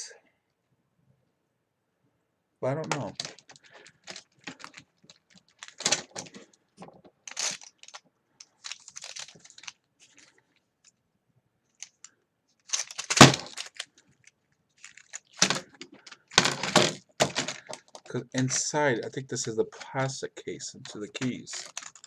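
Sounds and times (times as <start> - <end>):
plastic keyboard parts rattling: 2.8 - 10.4, 11.7 - 18.7, 20.8 - 22.0.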